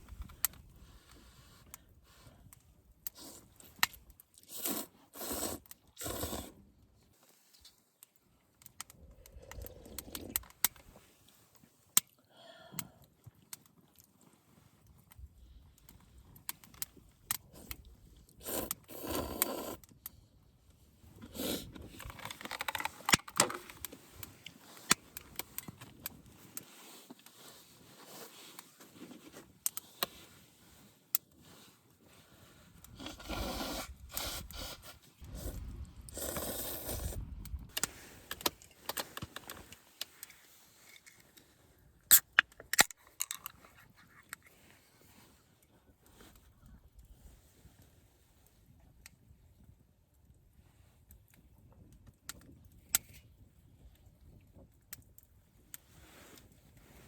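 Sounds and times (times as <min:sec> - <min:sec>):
objects scraping and rustling: 0:21.1 - 0:41.7.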